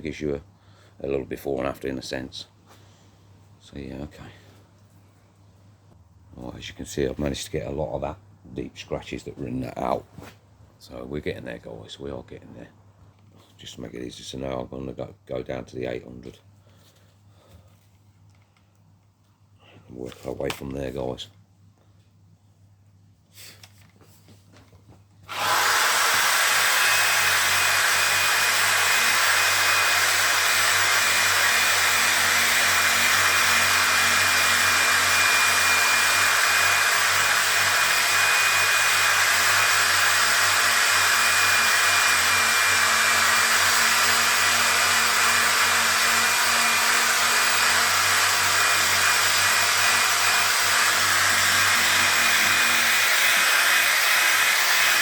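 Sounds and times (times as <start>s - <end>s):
electric sander running: 25.3s - 55.0s.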